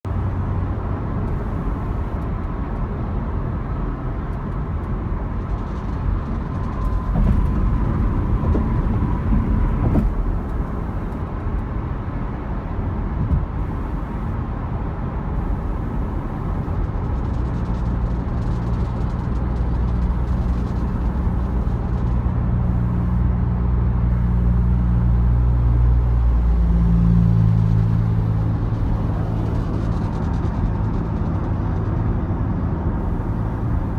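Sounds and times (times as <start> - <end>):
car engine running: 0.1 - 12.2, 12.8 - 33.9
rattling noise: 5.3 - 11.2, 15.4 - 23.2, 27.5 - 32.2.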